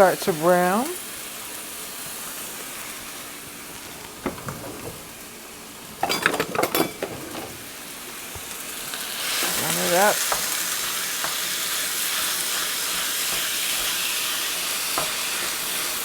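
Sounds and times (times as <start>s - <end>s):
meat sizzling in a pan: 0.0s - 4.2s, 7.4s - 16.0s
knocks and clatter: 4.0s - 5.2s
spoon clinking and scraping a pan: 6.0s - 7.6s.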